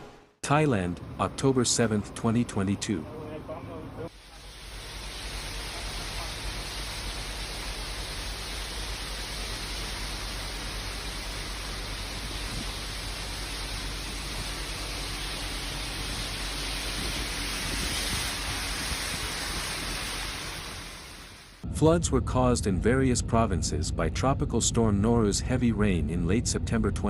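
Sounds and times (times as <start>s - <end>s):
water rushing: 4.1s - 21.6s.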